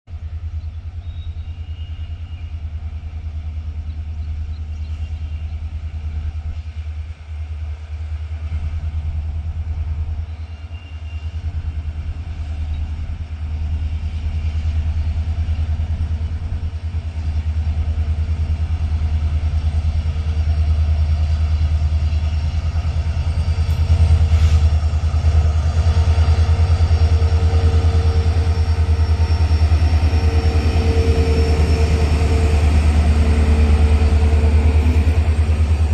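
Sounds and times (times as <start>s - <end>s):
locomotive engine rumbling: 0.1s - 35.9s
steady tone: 26.4s - 35.9s.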